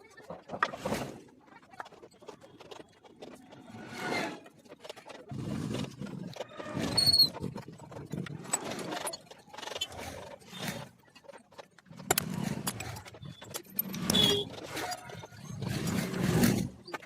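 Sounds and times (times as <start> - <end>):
metal parts clinking and scraping: 6.1 - 17.0.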